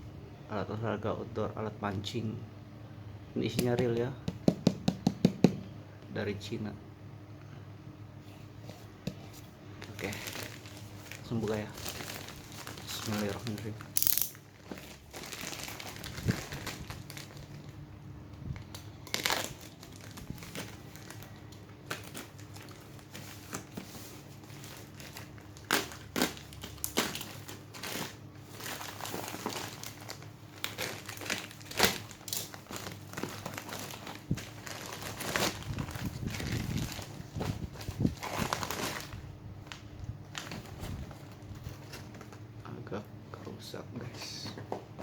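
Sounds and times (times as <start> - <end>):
faint steady hum: 0.0 - 45.0
plastic packaging crinkling: 9.7 - 17.8, 18.4 - 42.5.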